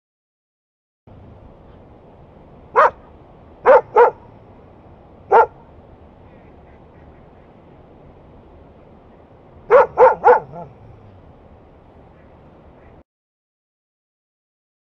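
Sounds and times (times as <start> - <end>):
faint background hiss: 1.1 - 13.0
dog barking: 2.7 - 4.3, 5.3 - 5.6, 9.7 - 11.0.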